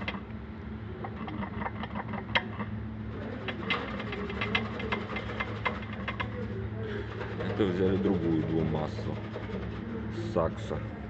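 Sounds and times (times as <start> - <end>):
flywheel knocking: 0.0 - 0.3, 1.0 - 11.0
steady low hum: 0.0 - 11.0.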